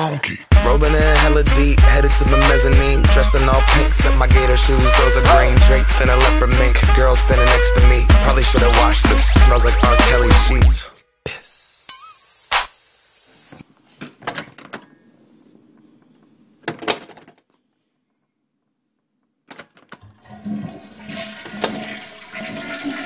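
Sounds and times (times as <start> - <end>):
clicks and knocks: 19.4 - 20.1
toilet flushing: 20.1 - 23.0.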